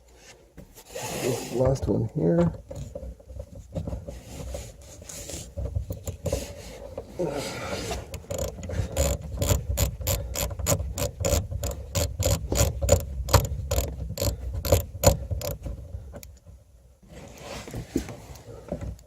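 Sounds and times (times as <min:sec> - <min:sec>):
hand ratchet clicking: 0:08.0 - 0:16.4.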